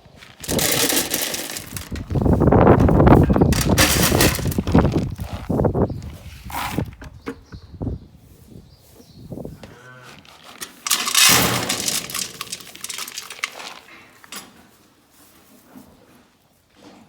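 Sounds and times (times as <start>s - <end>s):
hard objects clattering together: 0.2s - 5.4s, 10.4s - 14.5s.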